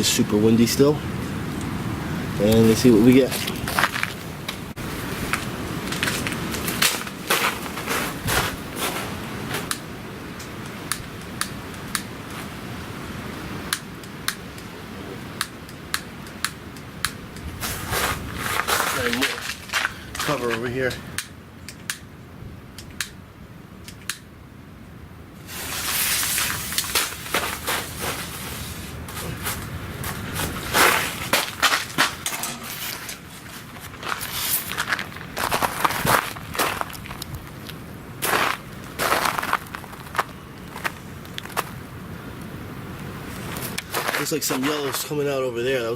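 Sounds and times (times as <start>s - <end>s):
wind buffeting microphone: 0.0s - 21.3s, 25.5s - 44.2s
crunching of icy snow: 4.9s - 9.7s, 17.6s - 20.7s, 25.4s - 41.8s, 43.3s - 45.2s
sharp clicks: 10.4s - 12.1s, 13.7s - 14.7s, 15.4s - 17.5s, 21.1s - 22.1s, 22.7s - 23.2s, 23.8s - 24.3s.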